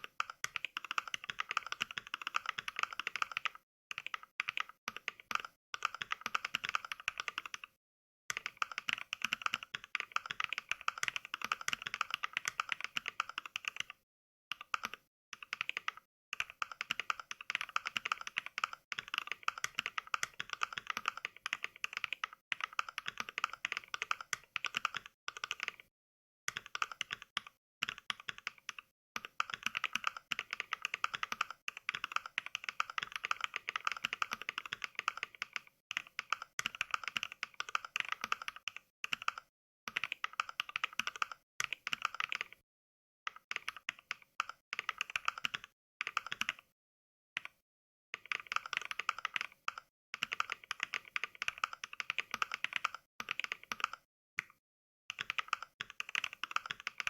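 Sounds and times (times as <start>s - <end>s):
simulated keyboard typing clicks: 0.0s - 25.9s, 26.5s - 42.6s, 43.3s - 46.7s, 47.4s - 47.6s, 48.2s - 57.0s.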